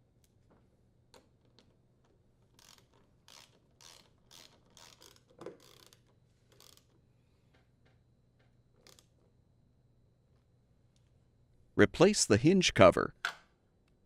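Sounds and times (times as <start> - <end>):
screwdriver ratcheting strokes: 2.6 - 6.9.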